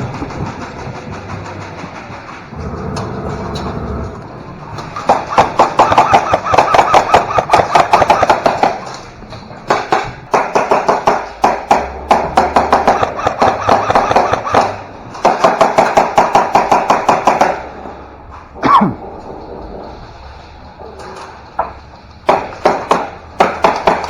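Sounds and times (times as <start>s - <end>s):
airsoft gun firing bursts: 5.0s - 8.9s, 9.7s - 17.7s.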